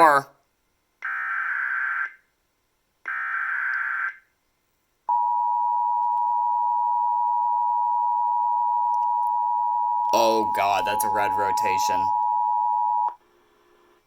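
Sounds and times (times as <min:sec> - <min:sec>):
steady attention tone: 0:05.1 - 0:13.2.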